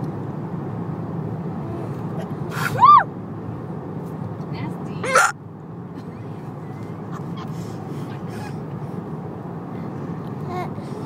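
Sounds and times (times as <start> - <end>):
road rumble inside car: 0.0 - 11.0
baby whimpering: 5.0 - 5.3.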